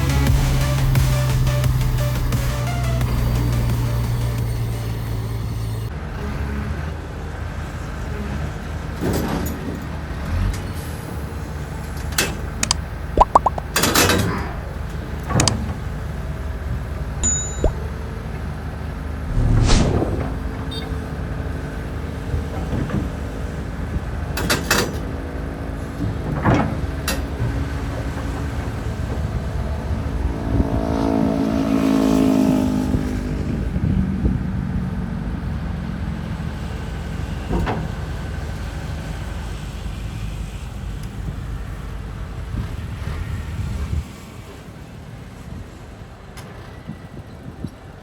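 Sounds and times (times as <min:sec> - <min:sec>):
diesel machinery running: 0:00.0 - 0:13.2, 0:14.3 - 0:31.5.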